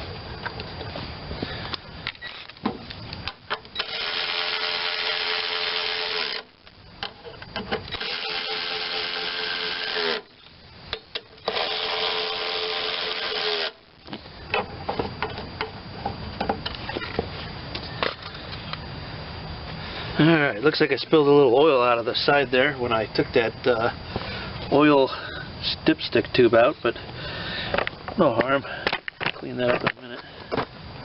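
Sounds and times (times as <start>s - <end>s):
power drill motor whine: 1.3s - 15.9s.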